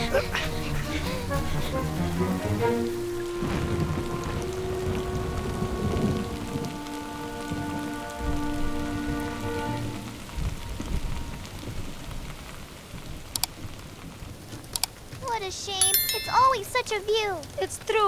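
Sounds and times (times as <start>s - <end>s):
sustained background music: 0.0s - 11.8s
rain falling steadily: 0.0s - 18.0s.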